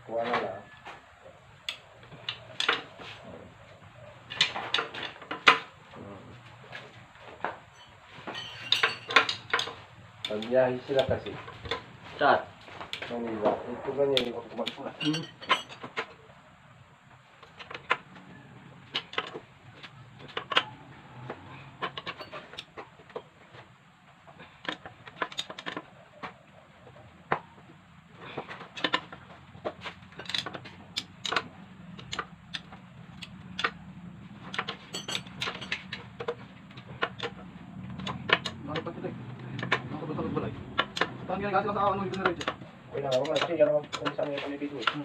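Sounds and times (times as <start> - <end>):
metal tools clinking: 6.6 - 12.3, 14.5 - 16.2, 18.8 - 23.3, 34.4 - 39.0, 39.6 - 45.0.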